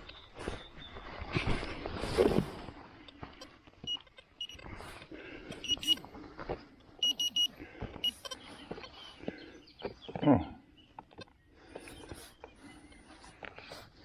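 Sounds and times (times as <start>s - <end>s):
metal detector beeps: 3.4s - 4.6s, 5.5s - 6.0s, 7.0s - 9.0s.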